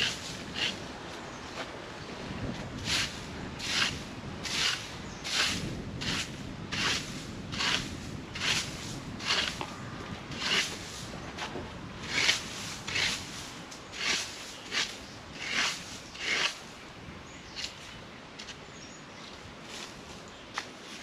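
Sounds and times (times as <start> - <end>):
broom sweeping dry leaves: 0.0 - 1.8, 2.6 - 9.6, 10.3 - 16.8, 19.6 - 21.0.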